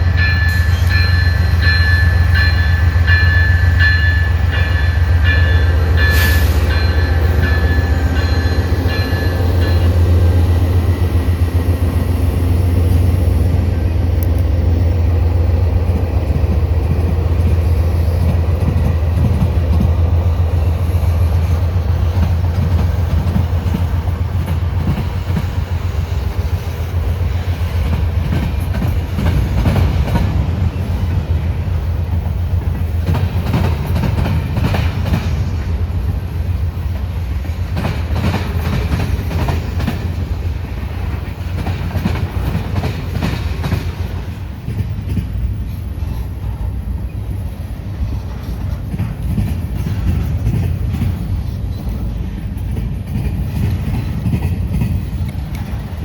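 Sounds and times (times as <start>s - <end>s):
freight train rumbling: 0.0s - 56.0s
wheels clacking over rail joints: 15.2s - 56.0s.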